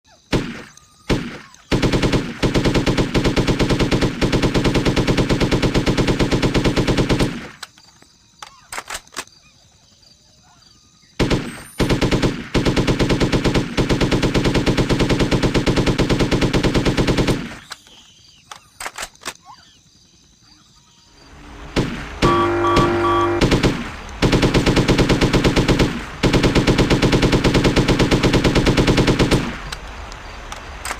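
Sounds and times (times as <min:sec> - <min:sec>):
single sharp gunshots: 0:00.3 - 0:07.6, 0:21.5 - 0:30.9
machine gun automatic bursts: 0:00.3 - 0:07.8, 0:11.1 - 0:20.9, 0:21.7 - 0:29.8.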